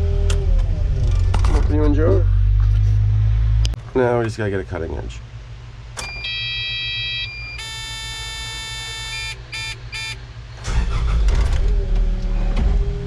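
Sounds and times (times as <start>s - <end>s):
loud low rumble: 0.0s - 3.8s, 10.5s - 13.0s
short beeps: 6.0s - 10.2s
electronic buzzer tones: 6.1s - 10.2s.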